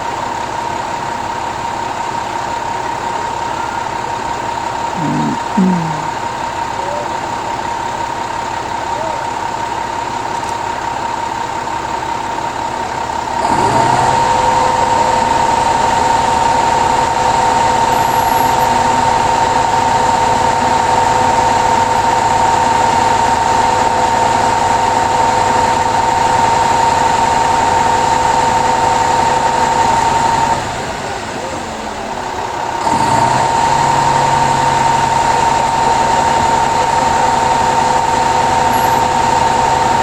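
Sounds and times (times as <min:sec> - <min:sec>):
engine running with high whine: 0:00.0 - 0:40.0.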